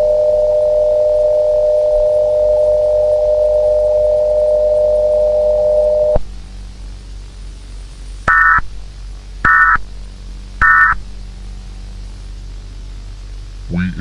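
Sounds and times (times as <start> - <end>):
warbling digital data tones: 8.3 - 8.7, 9.5 - 9.8, 10.6 - 11.0
steady tone: 8.3 - 8.8, 9.4 - 9.9, 10.6 - 11.2.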